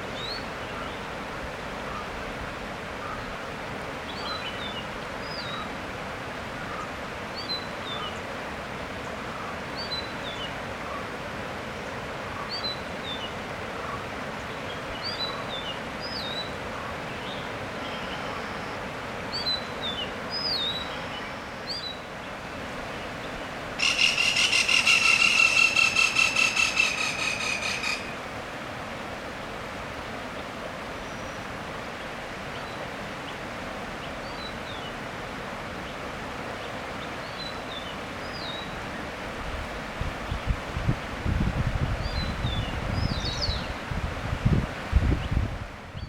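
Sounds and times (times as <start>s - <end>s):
bird chirping: 23.8s - 28.1s.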